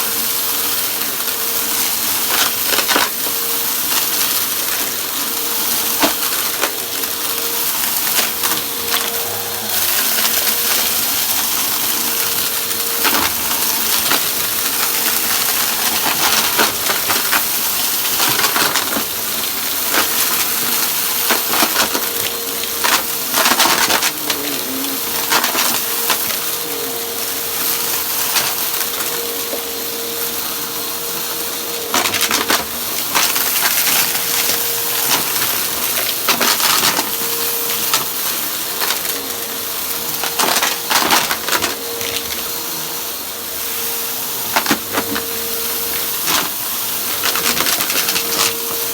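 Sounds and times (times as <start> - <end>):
debris crackling in vacuum: 0.0 - 48.9
vacuum cleaner running: 0.0 - 48.9.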